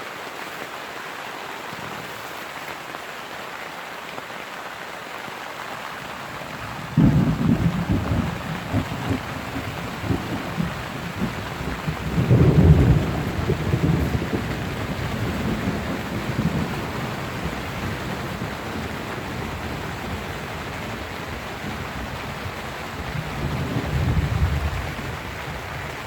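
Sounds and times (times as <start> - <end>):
rain on a tent: 0.0 - 26.0
thunder rumbling: 6.3 - 26.0.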